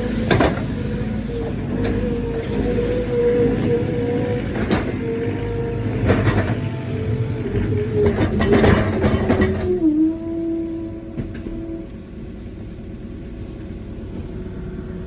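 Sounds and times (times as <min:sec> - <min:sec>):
loader engine humming: 0:00.0 - 0:15.0
metallic clanks: 0:01.3 - 0:10.5.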